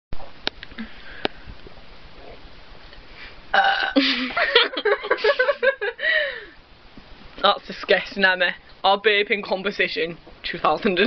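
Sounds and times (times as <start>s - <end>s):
person burping: 3.5s - 4.4s.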